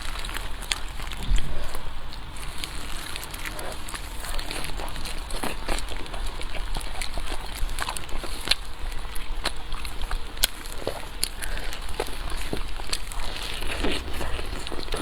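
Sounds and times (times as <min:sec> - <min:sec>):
person chewing food: 0:00.0 - 0:15.0
steady low hum: 0:00.0 - 0:15.0.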